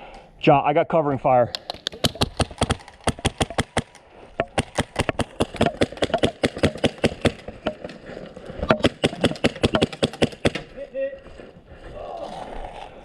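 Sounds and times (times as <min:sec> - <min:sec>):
airsoft rifle rapid shots: 0:01.9 - 0:07.4, 0:08.8 - 0:10.6.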